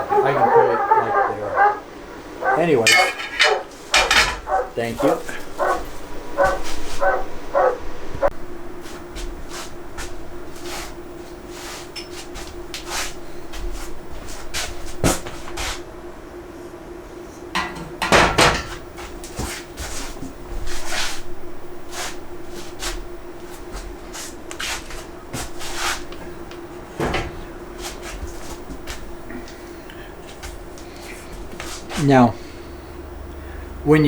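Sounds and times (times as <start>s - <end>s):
steady hum: 0.0s - 34.0s
metal rack parts knocking: 2.9s - 4.7s.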